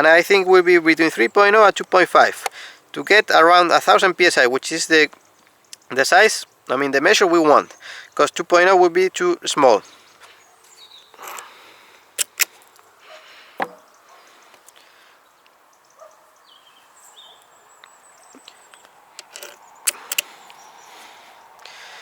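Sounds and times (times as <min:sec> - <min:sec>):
faint background hiss: 0:00.0 - 0:22.0
fittings clicking and knocking: 0:19.2 - 0:20.2.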